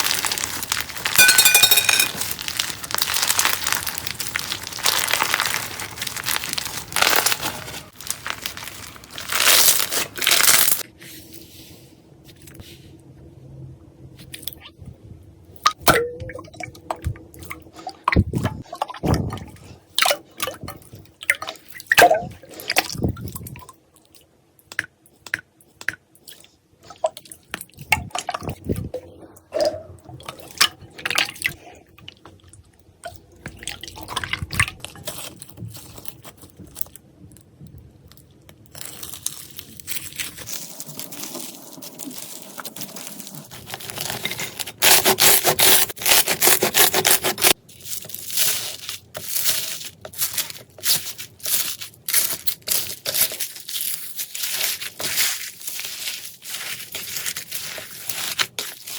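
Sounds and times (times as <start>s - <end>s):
slime clicking and crackling: 0.0s - 10.8s, 33.2s - 37.0s, 38.0s - 58.9s.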